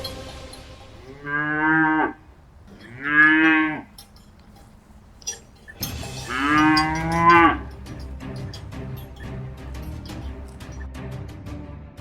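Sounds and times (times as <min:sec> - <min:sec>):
cow mooing: 0:00.0 - 0:10.8.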